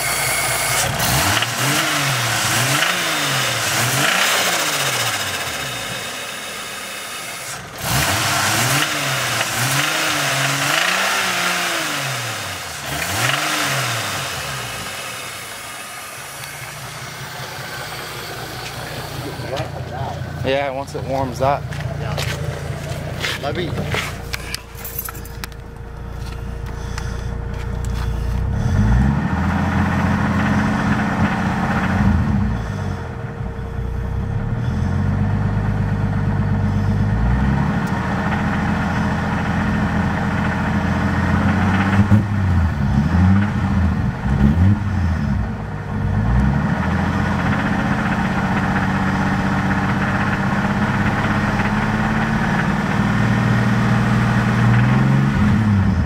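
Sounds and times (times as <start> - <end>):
car engine revving: 0.0 - 56.0
engine knocking: 38.0 - 43.6, 46.8 - 54.9.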